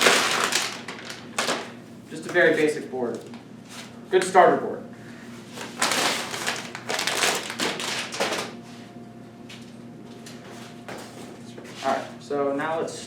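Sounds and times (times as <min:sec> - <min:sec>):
packaging rustling: 0:00.0 - 0:01.8, 0:05.6 - 0:08.6.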